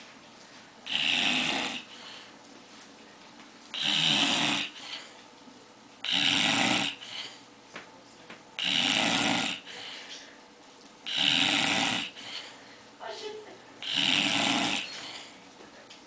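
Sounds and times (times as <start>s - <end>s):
loud snores: 0.9s - 1.9s, 3.8s - 4.8s, 6.0s - 7.1s, 8.6s - 9.7s, 11.1s - 12.2s, 13.8s - 15.2s
faint breathing: 1.8s - 2.4s, 4.6s - 5.2s, 6.9s - 7.5s, 9.6s - 10.5s, 12.0s - 13.0s, 14.8s - 15.4s.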